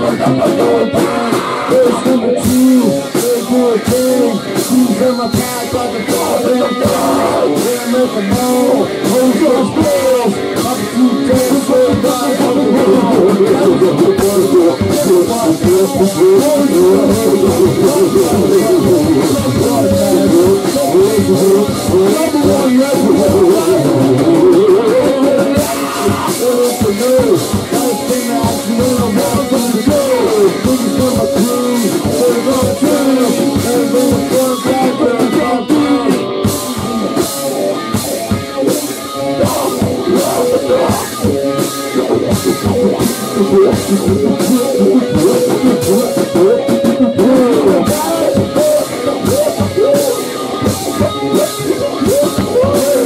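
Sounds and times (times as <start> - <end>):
drum kit: 0.0 - 53.0
electric guitar: 0.0 - 53.0.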